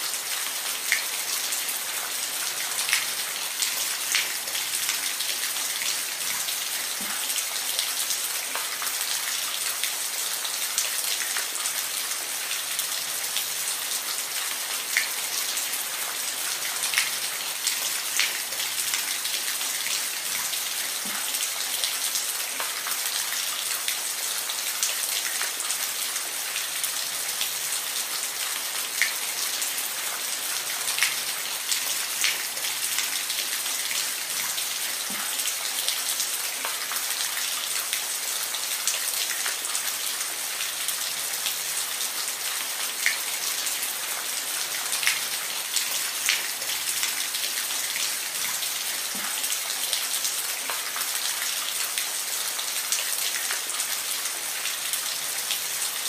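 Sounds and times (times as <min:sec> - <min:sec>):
steady rain: 0:00.0 - 0:56.0.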